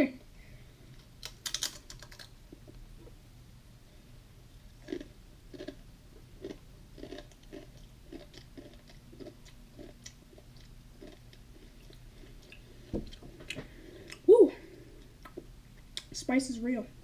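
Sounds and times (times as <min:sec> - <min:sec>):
person chewing crunchy chips: 0:04.7 - 0:14.3.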